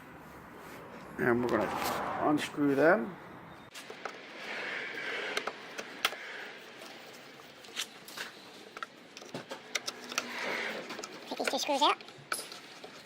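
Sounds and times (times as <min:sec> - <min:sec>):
light scraping: 0:00.4 - 0:02.6.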